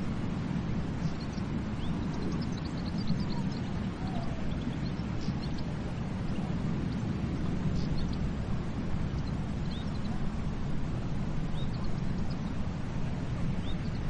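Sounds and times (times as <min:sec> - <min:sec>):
ocean waves on beach: 0:00.0 - 0:14.0.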